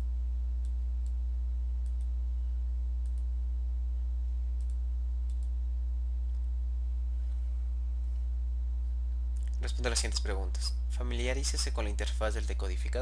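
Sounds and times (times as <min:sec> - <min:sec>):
low electrical hum: 0:00.0 - 0:13.0
computer mouse clicks: 0:01.8 - 0:02.1, 0:03.0 - 0:03.3, 0:04.6 - 0:05.5.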